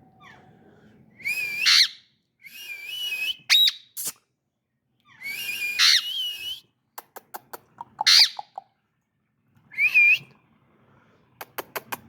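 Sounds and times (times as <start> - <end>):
parrot whistling: 1.2 - 3.9, 5.2 - 6.6
parrot squawk-whistles: 1.2 - 4.0, 5.1 - 6.6, 9.7 - 10.3
parrot clicks: 11.4 - 12.0.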